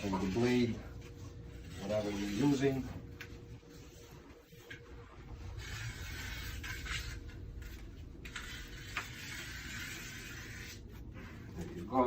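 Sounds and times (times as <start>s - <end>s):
blade rasping along tape: 1.5s - 2.8s, 5.4s - 11.7s.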